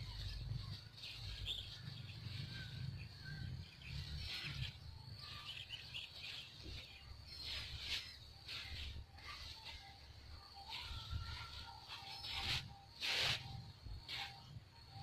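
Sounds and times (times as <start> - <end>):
steady low rumble: 0.0 - 11.9
small birds chirping: 0.0 - 15.0.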